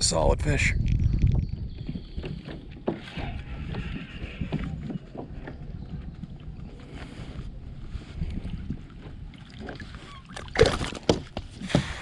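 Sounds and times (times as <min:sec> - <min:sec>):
wind noise on microphone: 0:00.0 - 0:12.0
knocks and rustles of handling fish: 0:01.8 - 0:06.1, 0:09.0 - 0:12.0.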